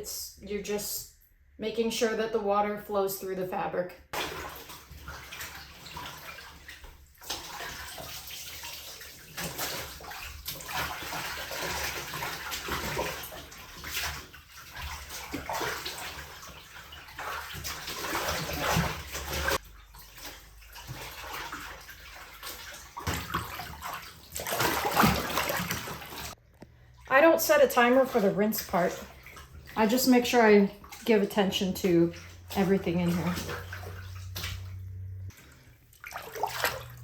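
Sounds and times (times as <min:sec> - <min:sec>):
laundry sloshing in water: 0:04.1 - 0:37.0.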